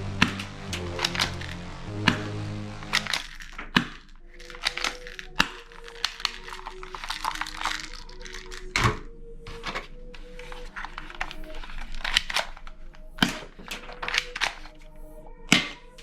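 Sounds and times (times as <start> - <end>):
quiet background music: 0.0 - 16.0
packaging crinkling: 2.9 - 9.0
plastic toys clicking and knocking: 3.0 - 14.9.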